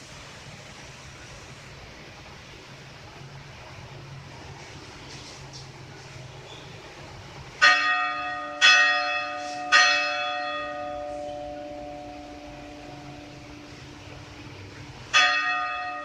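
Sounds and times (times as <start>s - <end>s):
church bell ringing: 7.6s - 16.0s.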